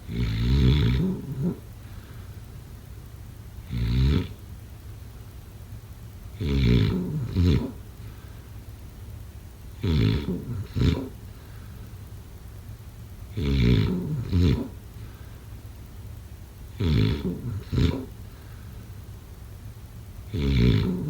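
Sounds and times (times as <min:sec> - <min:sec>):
person snoring: 0:00.1 - 0:01.6, 0:09.8 - 0:11.2, 0:13.4 - 0:14.7, 0:16.8 - 0:18.1, 0:20.3 - 0:21.0.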